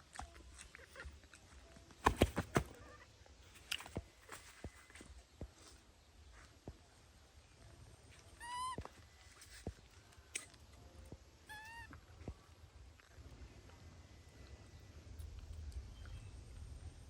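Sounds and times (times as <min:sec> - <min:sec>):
baby monkey high-pitched calls: 0:08.4 - 0:08.9, 0:11.4 - 0:12.0.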